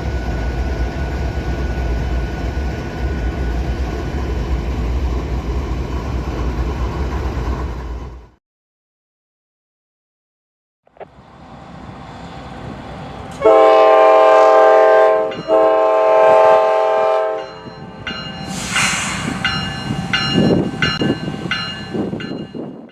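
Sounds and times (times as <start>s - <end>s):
train wheels rumbling and clattering: 0.0s - 8.4s, 11.2s - 22.9s
locomotive air horn: 13.4s - 17.6s.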